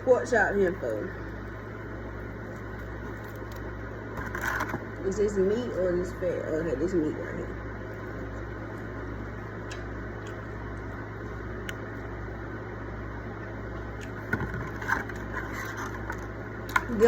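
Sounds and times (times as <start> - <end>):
low mechanical hum: 0.0 - 17.0
handling and eating noises: 0.7 - 5.1, 13.7 - 17.0.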